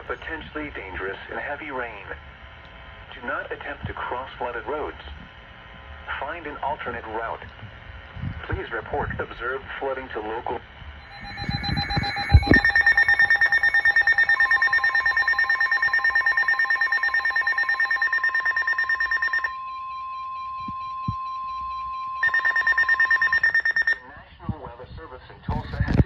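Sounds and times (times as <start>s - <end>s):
rapid electronic beeping: 11.0s - 24.0s
steady warning tone: 11.0s - 24.1s.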